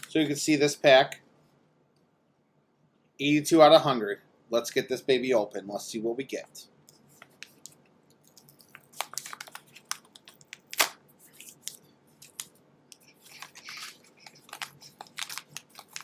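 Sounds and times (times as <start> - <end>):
card pack wrapping crackling: 7.2 - 16.0.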